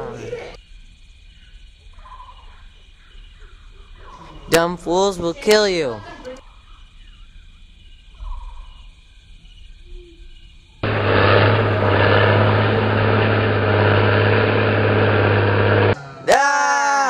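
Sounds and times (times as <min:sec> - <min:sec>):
loud engine running: 0:10.8 - 0:16.0.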